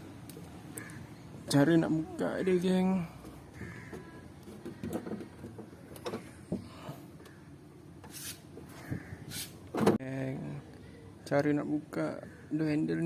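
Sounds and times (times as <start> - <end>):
short scrapes: 8.1 - 9.6.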